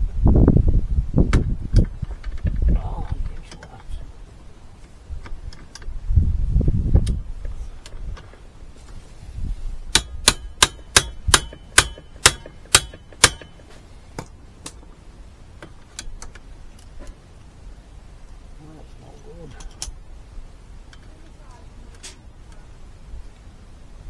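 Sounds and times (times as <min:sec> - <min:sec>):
metal-on-metal clangs: 0:09.9 - 0:13.8.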